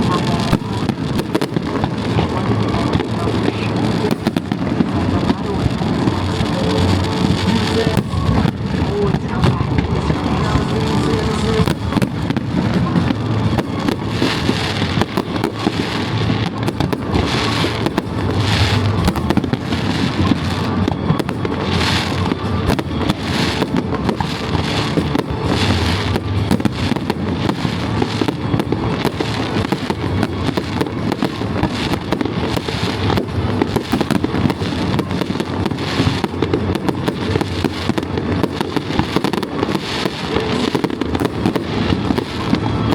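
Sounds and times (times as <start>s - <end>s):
fireworks bangs and crackles: 0.0s - 42.9s.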